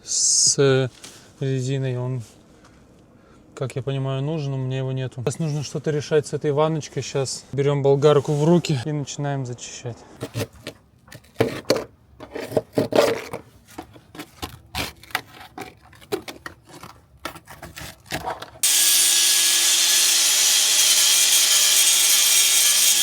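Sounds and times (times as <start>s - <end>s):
tool handling clicks and knocks: 10.2s - 18.6s
angle grinder on sheet metal: 18.6s - 23.0s.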